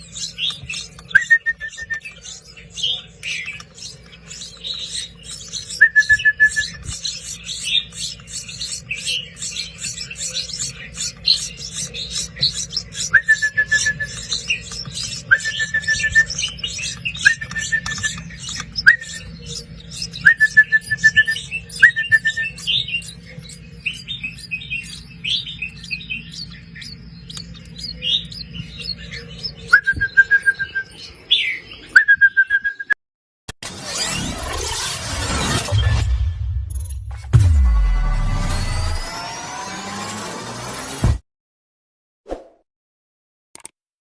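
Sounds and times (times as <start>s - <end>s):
baby birds chirping: 0.0s - 32.7s.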